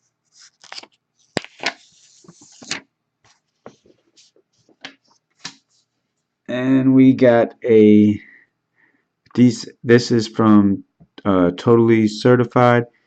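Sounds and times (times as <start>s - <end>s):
cards in plastic sleeves rustling: 0.3s - 5.9s.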